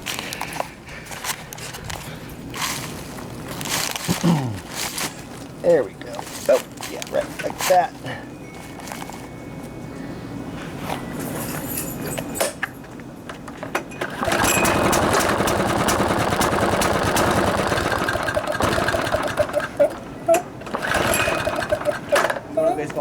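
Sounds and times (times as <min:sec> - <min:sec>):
lawnmower engine sputtering: 0:14.0 - 0:22.5.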